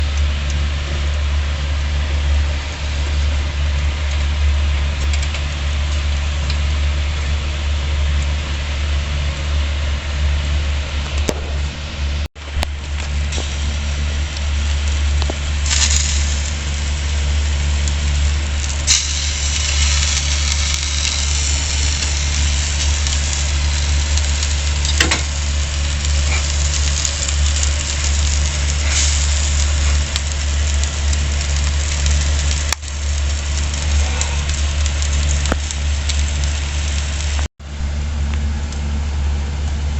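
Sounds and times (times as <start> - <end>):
loud low rumble: 0.0 - 39.9
meat sizzling and crackling: 12.4 - 37.5.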